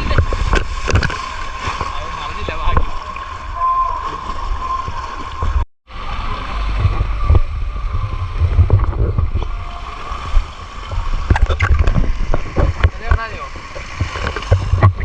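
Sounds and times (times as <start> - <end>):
water splashes: 0.0 - 15.0
wind buffeting microphone: 6.4 - 15.0.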